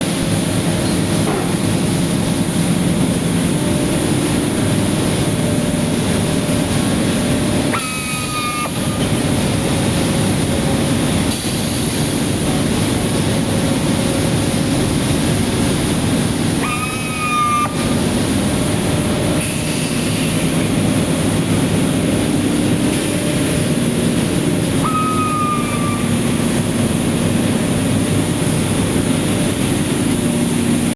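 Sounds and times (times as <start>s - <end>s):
compressor rumbling: 0.0s - 30.9s
short falling whistle: 24.9s - 26.1s.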